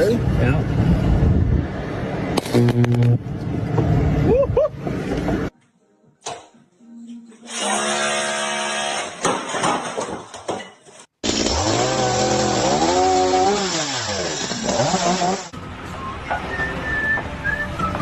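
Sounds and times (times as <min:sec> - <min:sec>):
louder motor revving: 0:11.2 - 0:15.5.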